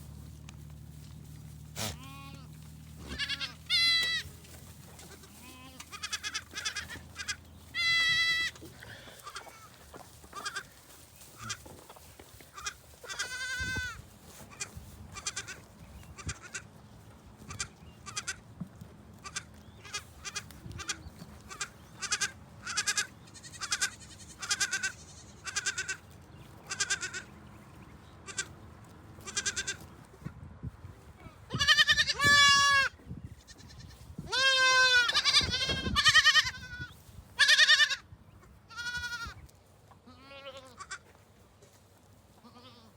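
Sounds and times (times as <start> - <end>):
goats bleating: 1.8 - 10.8, 11.4 - 11.7, 12.5 - 16.7, 17.5 - 18.4, 19.2 - 27.4, 28.2 - 28.6, 29.2 - 29.9, 31.3 - 38.1, 38.7 - 39.4, 40.0 - 41.1, 42.4 - 42.9.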